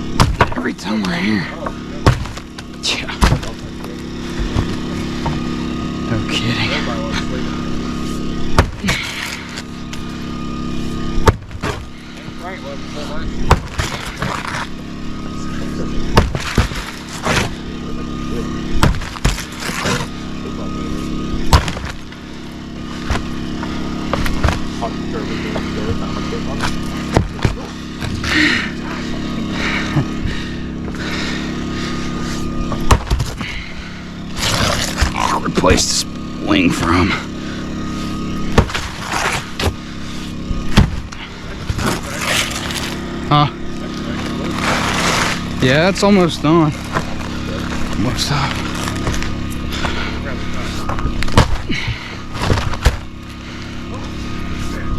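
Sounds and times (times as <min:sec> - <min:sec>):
sharp knocks and bangs: 0:00.0 - 0:00.7, 0:01.6 - 0:05.6, 0:08.4 - 0:09.2, 0:11.2 - 0:12.0, 0:13.4 - 0:14.7, 0:16.0 - 0:17.6, 0:18.6 - 0:20.1, 0:21.4 - 0:22.1, 0:38.4 - 0:39.8, 0:40.6 - 0:42.0
engine running: 0:00.0 - 0:54.9.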